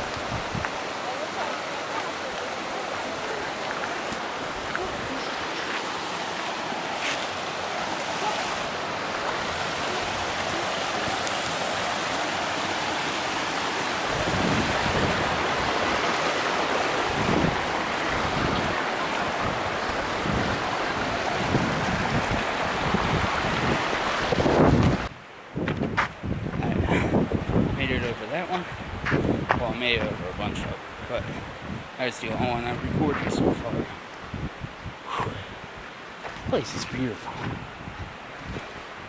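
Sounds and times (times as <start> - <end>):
wind buffeting microphone: 0.0 - 5.6, 14.0 - 39.0
water rushing over rocks: 0.0 - 39.0.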